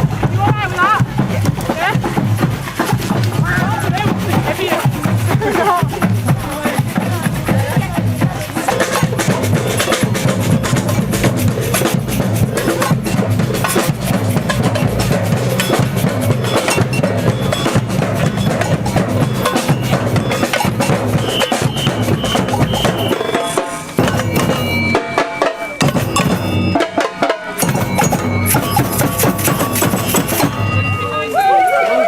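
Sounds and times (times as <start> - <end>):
wood-block-like strikes: 0.0 - 31.1
samba band drumming: 0.0 - 32.0.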